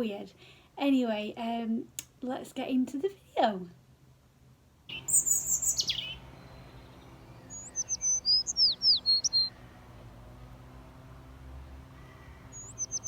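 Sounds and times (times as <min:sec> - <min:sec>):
songbirds singing: 0:04.9 - 0:13.0.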